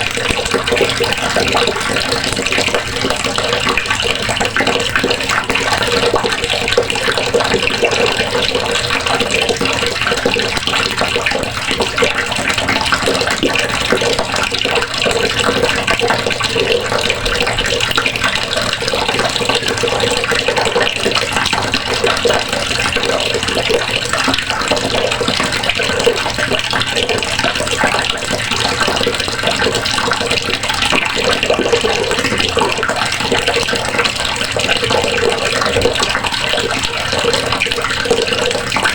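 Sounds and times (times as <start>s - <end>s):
water running from a faucet: 0.0s - 38.9s
water splashing into a basin: 0.0s - 38.9s.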